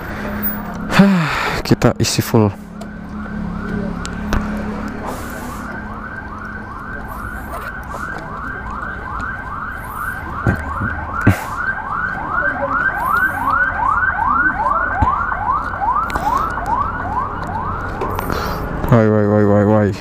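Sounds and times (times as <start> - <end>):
electronic siren yelping: 2.6 - 18.1.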